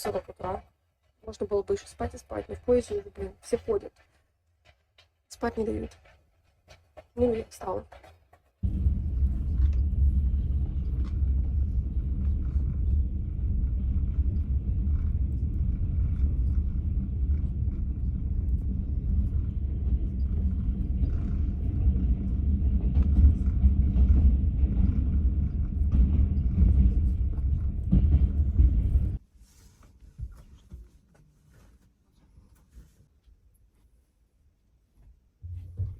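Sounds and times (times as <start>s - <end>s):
train carriage rumble: 6.8s - 29.3s.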